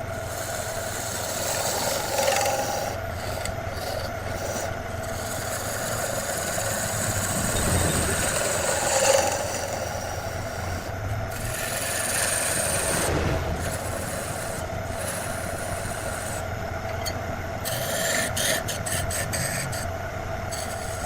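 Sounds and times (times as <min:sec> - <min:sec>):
lathe motor humming: 0:00.0 - 0:19.7
turning tool scraping wood: 0:00.2 - 0:16.4.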